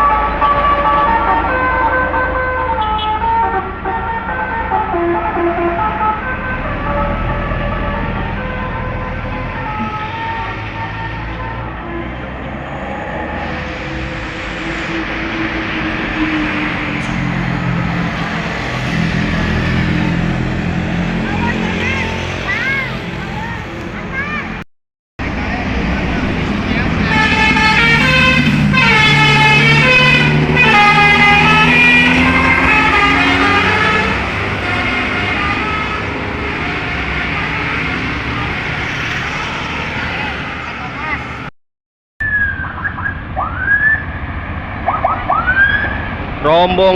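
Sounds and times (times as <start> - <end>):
heavy vehicle engine hum: 0.0 - 41.5
road traffic noise: 0.0 - 41.6, 42.2 - 46.9
multi-tone musical horn: 2.7 - 7.8, 27.0 - 38.7.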